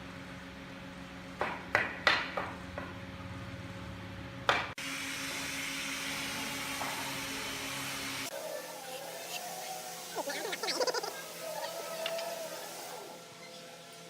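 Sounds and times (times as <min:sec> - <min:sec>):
steady hiss: 0:04.9 - 0:14.0.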